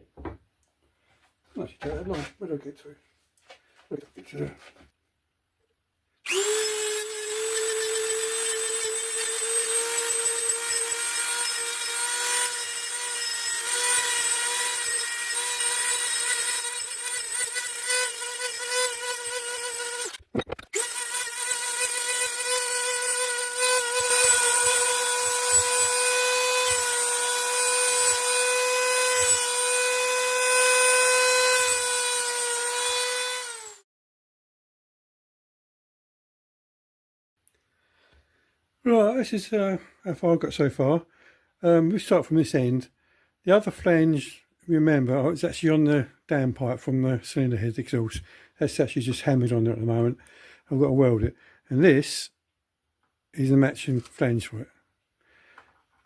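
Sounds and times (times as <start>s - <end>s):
rotary tool grinding whine: 6.2s - 33.8s.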